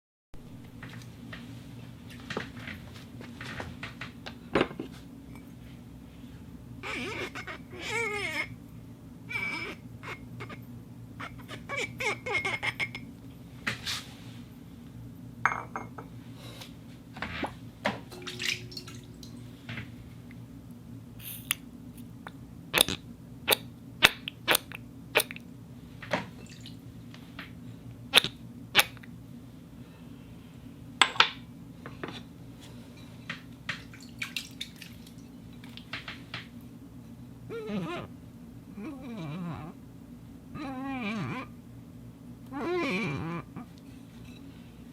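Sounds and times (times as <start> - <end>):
glass clinking: 15.5 - 16.0.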